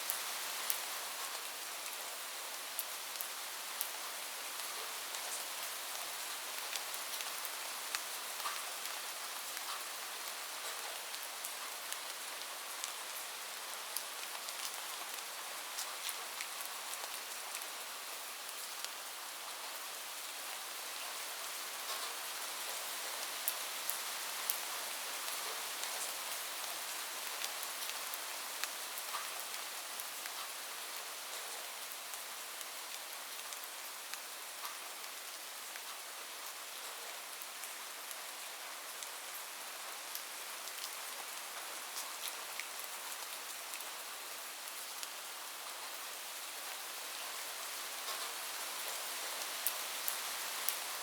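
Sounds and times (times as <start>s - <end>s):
rain falling on a roof: 0.0s - 51.0s.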